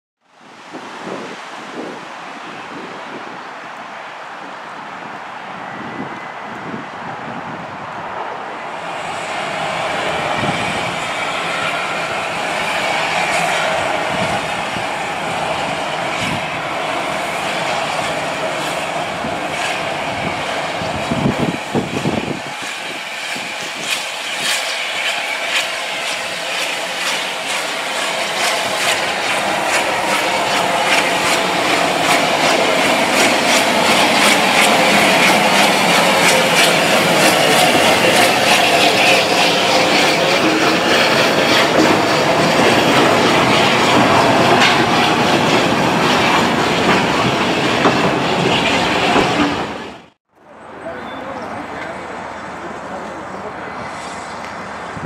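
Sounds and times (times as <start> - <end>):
steam train running: 0.6 - 55.0
train wheels clicking over rail joints: 11.4 - 50.1.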